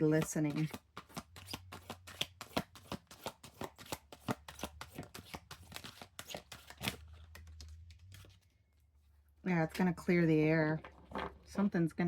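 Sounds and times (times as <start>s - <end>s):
cards being shuffled: 0.1s - 8.4s.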